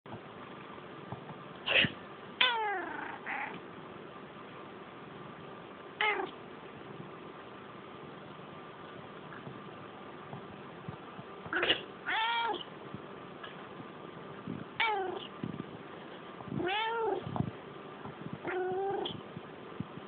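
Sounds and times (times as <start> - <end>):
cat meowing: 2.4 - 3.6, 6.0 - 6.4, 11.5 - 12.7, 14.8 - 15.3, 16.6 - 17.3, 18.4 - 19.2.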